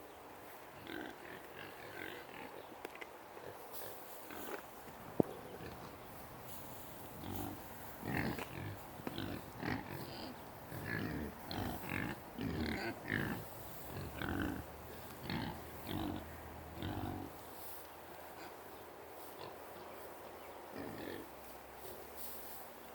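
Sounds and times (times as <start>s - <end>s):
hogs grunting: 0.8s - 2.7s, 7.1s - 17.4s, 20.7s - 21.4s.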